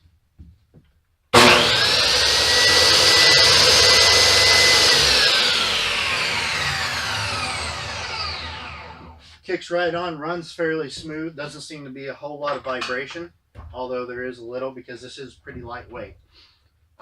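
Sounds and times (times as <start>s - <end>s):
table saw motor whining: 1.4s - 9.2s.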